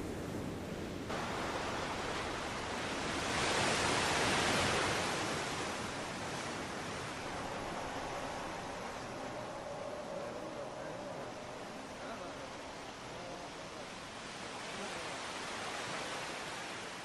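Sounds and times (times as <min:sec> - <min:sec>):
steady rushing noise: 0:01.1 - 0:16.6.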